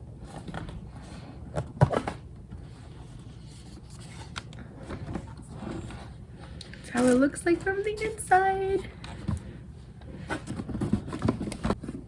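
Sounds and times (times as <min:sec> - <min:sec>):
rubbing and scraping on plastic: 0:00.2 - 0:08.3.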